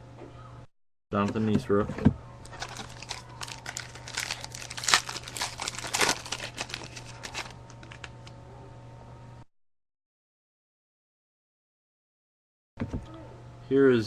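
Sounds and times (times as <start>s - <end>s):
foil wrapper crinkling and tearing: 2.4s - 8.3s.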